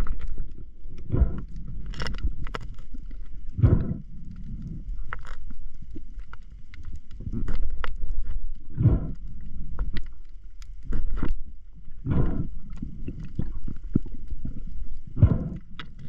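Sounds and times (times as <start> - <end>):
low steady rumble: 0.0 - 16.0
breathing through a snorkel: 1.0 - 1.7, 3.6 - 4.9, 8.7 - 9.6, 12.0 - 13.1, 15.2 - 15.9.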